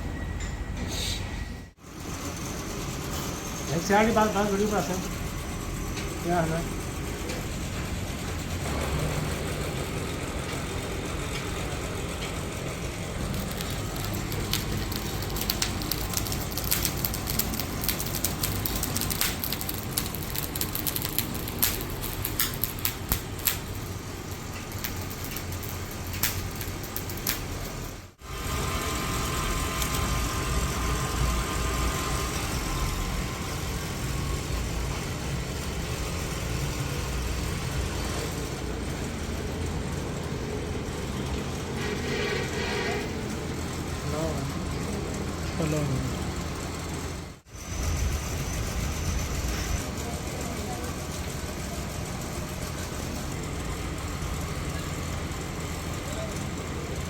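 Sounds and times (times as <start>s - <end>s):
sharp clicks: 13.3s - 23.7s, 24.6s - 27.7s
engine-like rumble: 29.3s - 57.0s.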